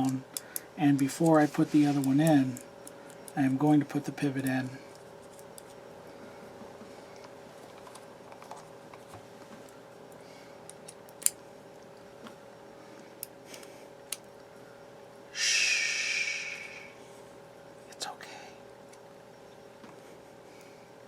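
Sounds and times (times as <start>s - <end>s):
breathy rush of noise: 15.3s - 17.2s.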